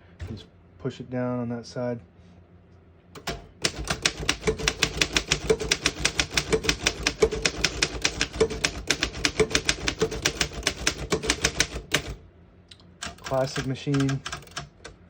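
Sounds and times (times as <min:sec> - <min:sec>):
manual typewriter typing: 0:03.2 - 0:12.2, 0:13.0 - 0:15.0.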